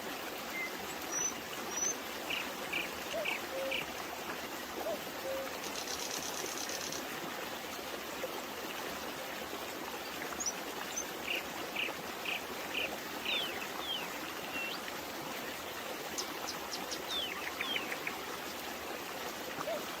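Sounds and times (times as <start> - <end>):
babbling brook: 0.0 - 20.0
small birds chirping: 16.2 - 18.1.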